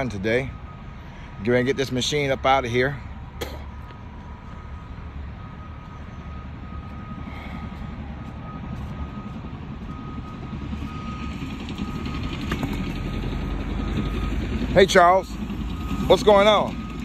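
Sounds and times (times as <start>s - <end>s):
bulldozer diesel engine running: 0.0s - 17.0s
backup alarm beeping: 3.0s - 12.4s, 13.8s - 17.0s.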